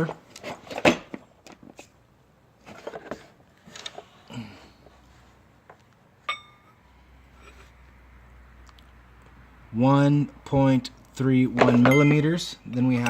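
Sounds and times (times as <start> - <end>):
sharp metallic clink: 6.3 - 6.8.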